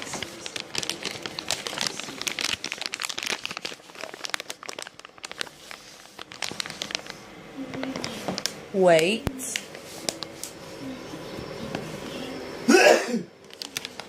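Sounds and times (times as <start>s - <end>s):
rapid crinkling and crackling: 0.0s - 10.9s, 13.4s - 14.0s.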